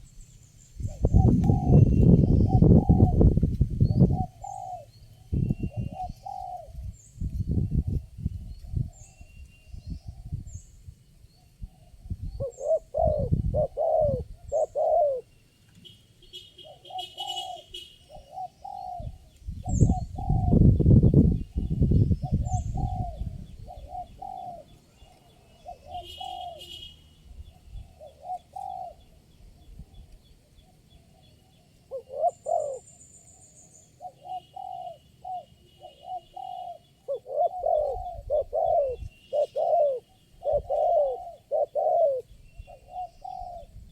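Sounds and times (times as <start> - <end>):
small birds chirping: 0.0 - 43.9
doves cooing: 0.9 - 6.9, 11.7 - 15.3, 16.6 - 20.8, 21.6 - 33.0, 33.8 - 43.9.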